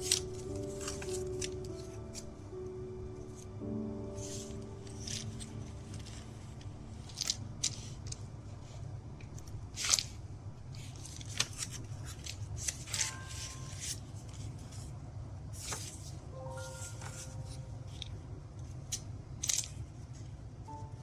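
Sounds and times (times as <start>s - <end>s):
paper rustling and crinkling: 0.0s - 2.4s, 4.1s - 15.0s, 15.6s - 18.2s
steady low hum: 0.0s - 21.0s.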